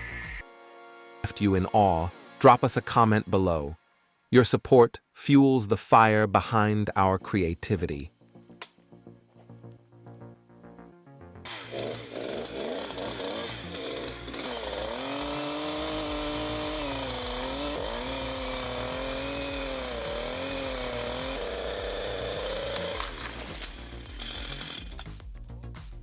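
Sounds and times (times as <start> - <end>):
high steady whine: 0.0 - 0.4, 11.5 - 25.1
machine engine running hard: 11.5 - 25.0.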